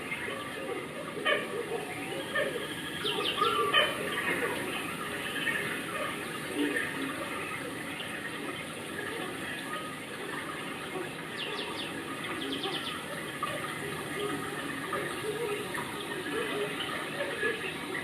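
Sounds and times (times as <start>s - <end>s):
running water rushing: 0.0s - 18.0s
bird chirping: 2.2s - 5.9s.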